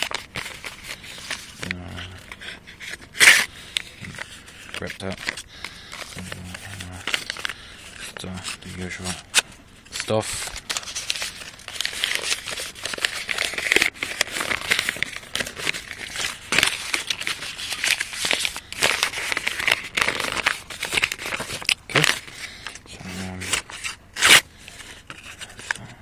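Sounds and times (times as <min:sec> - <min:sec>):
knife cutting shredded paper: 0:23.0 - 0:24.4.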